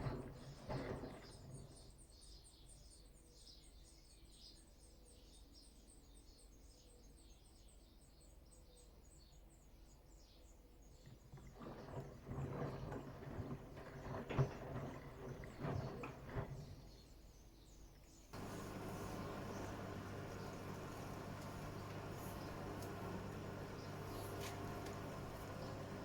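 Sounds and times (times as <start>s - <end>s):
faint low hum: 18.4s - 26.0s
rapid faint high ticks: 18.4s - 26.0s
washing machine drum tumbling: 18.4s - 26.0s.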